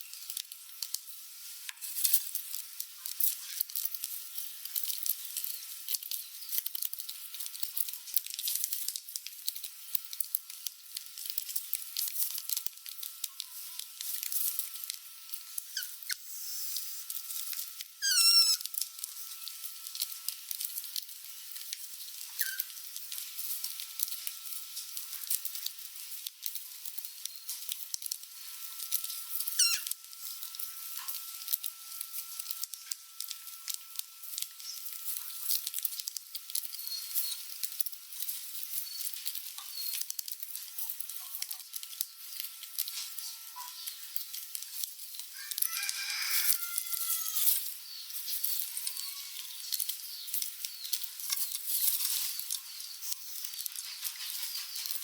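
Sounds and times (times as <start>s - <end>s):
rats scuffling: 12.0s - 20.8s, 22.4s - 24.3s, 28.9s - 31.3s, 45.4s - 55.0s
rat squeaks: 15.6s - 16.8s, 18.0s - 18.8s, 22.4s - 22.8s, 29.3s - 30.0s, 36.7s - 37.5s, 38.7s - 40.0s, 48.7s - 49.6s.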